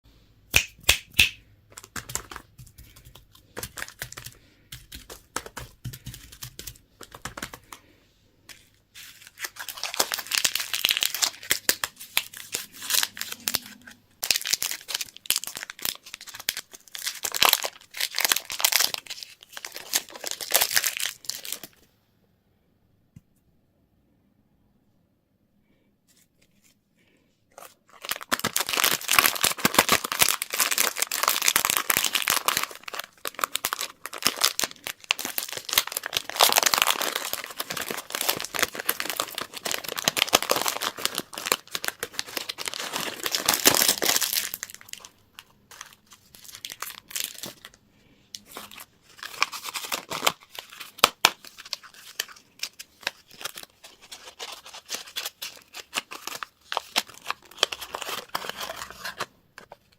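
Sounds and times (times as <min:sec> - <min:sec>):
wrappers crinkling and tearing: 0:09.0 - 0:21.8, 0:27.6 - 0:47.8, 0:48.4 - 0:59.9.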